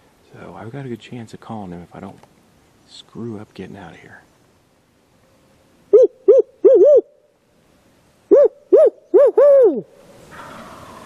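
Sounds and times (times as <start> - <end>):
owl hooting: 5.9 - 7.2, 8.3 - 11.0.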